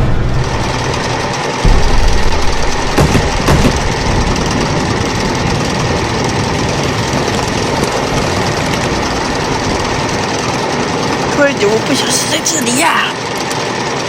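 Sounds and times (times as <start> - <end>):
loud mechanical rumble: 0.0 - 14.0
sharp knocks: 1.7 - 4.0.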